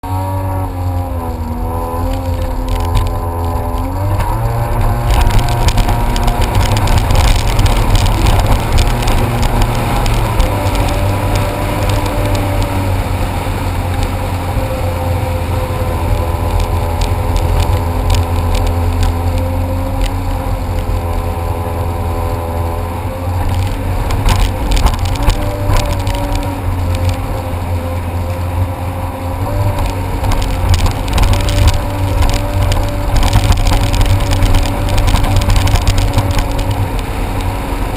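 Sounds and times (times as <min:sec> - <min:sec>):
jet ski engine running: 0:00.0 - 0:37.9.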